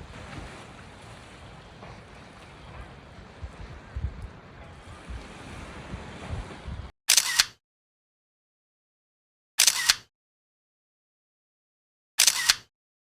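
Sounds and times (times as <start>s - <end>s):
surf: 0.0s - 6.9s
wind: 0.0s - 7.6s, 9.6s - 10.0s, 12.2s - 12.6s
camera shutter clicks: 7.1s - 7.6s, 9.6s - 10.1s, 12.2s - 12.7s.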